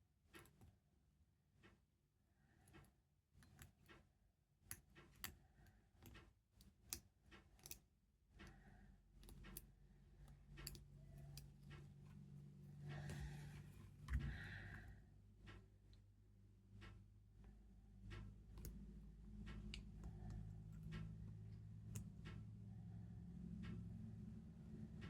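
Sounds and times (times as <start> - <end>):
faint low hum: 7.5 - 25.0.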